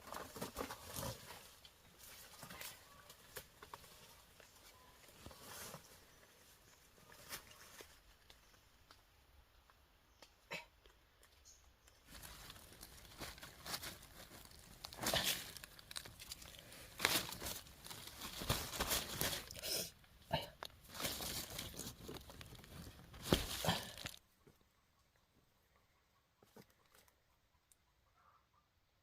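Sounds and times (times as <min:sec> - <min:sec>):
crackling and tearing: 0:11.9 - 0:19.6, 0:20.6 - 0:24.2.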